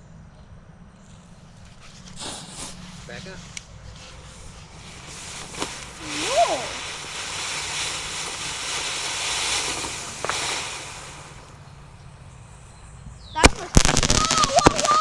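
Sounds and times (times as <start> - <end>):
firework sparks hissing: 1.7 - 11.9, 13.4 - 15.0
firework fountain igniting click: 2.0 - 11.9, 13.4 - 15.0
sharp pop: 13.4 - 15.0.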